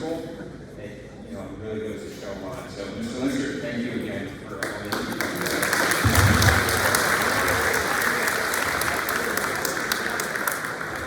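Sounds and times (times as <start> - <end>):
audience applauding: 4.6 - 11.0.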